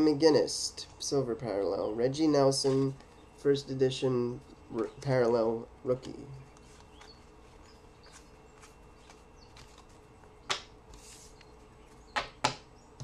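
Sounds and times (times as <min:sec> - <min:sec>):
trading cards rustling: 0:06.0 - 0:12.1.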